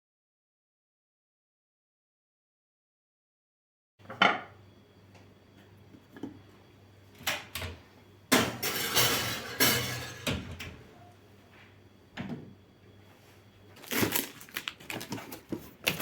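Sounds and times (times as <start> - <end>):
dishes clinking and knocking: 4.1 - 4.6, 8.3 - 10.7.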